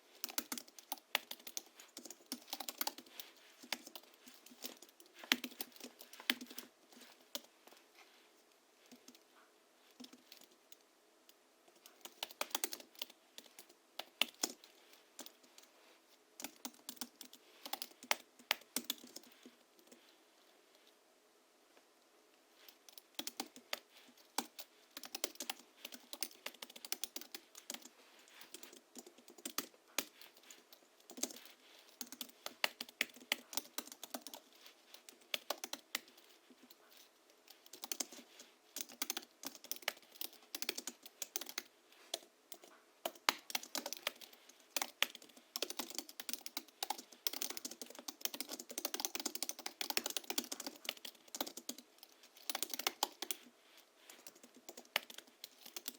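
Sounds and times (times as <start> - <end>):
soft keyboard typing: 0.0 - 7.8, 8.8 - 15.8, 16.4 - 20.2, 22.6 - 55.9.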